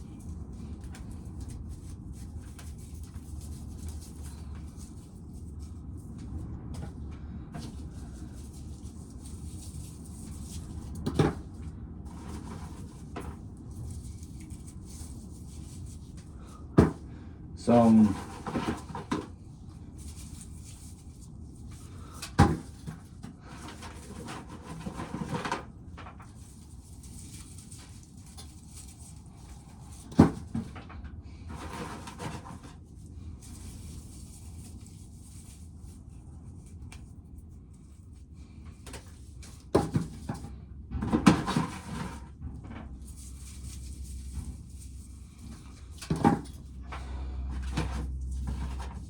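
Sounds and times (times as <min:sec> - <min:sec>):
rustling handling noise: 0:00.0 - 0:49.0.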